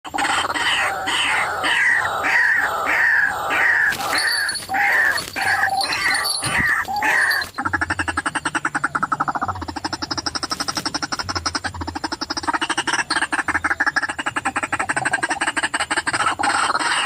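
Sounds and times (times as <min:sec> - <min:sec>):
rattle of croaks: 0:00.1 - 0:17.0
waterhen harsh calls: 0:00.2 - 0:08.6.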